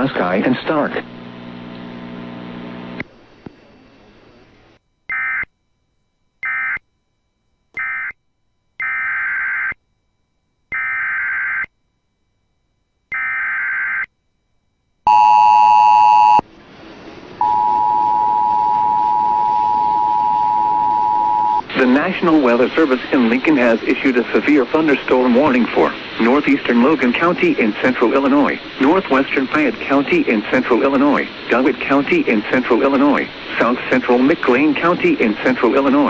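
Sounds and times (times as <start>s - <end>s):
two-tone attention signal: 17.4s - 21.7s.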